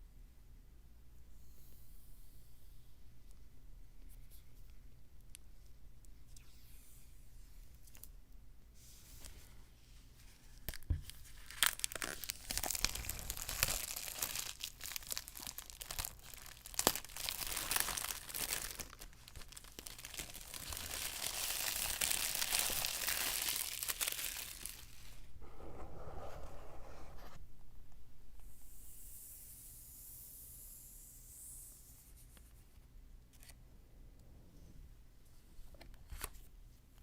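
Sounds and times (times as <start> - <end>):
packaging tearing and crinkling: 10.7 - 25.2.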